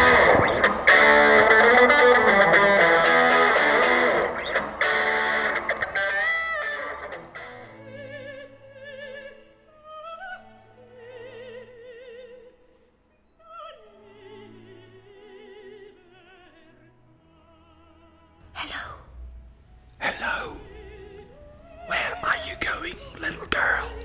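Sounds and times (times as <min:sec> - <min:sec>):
operatic singing: 0:00.0 - 0:12.6, 0:19.9 - 0:24.0.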